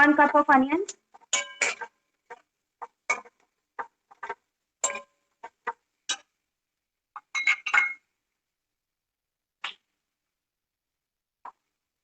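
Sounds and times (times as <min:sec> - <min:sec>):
metal spoon clinking on cookware: 0:01.2 - 0:02.0, 0:04.8 - 0:05.2, 0:07.2 - 0:08.0.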